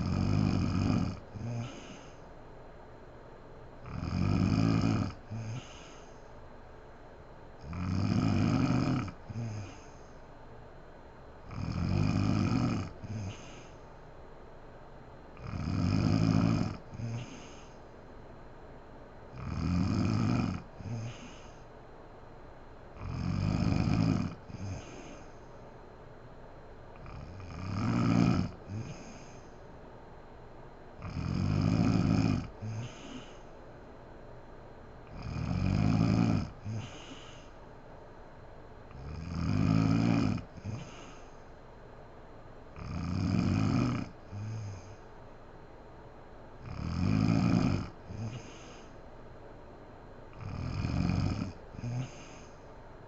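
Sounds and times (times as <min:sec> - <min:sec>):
woman snoring: 0:00.0 - 0:02.3, 0:03.8 - 0:06.2, 0:07.6 - 0:10.1, 0:11.4 - 0:13.9, 0:15.4 - 0:17.8, 0:19.3 - 0:21.7, 0:23.0 - 0:25.4, 0:27.0 - 0:29.6, 0:31.0 - 0:33.6, 0:35.1 - 0:37.6, 0:38.9 - 0:41.5, 0:42.7 - 0:45.0, 0:46.6 - 0:49.0, 0:50.3 - 0:52.7
puff of breath: 0:01.4 - 0:02.4, 0:05.3 - 0:06.4, 0:13.1 - 0:14.0, 0:17.0 - 0:18.0, 0:20.8 - 0:21.8, 0:24.5 - 0:25.7, 0:32.6 - 0:33.6, 0:36.6 - 0:37.7, 0:40.6 - 0:41.6, 0:48.1 - 0:49.1, 0:51.8 - 0:52.8.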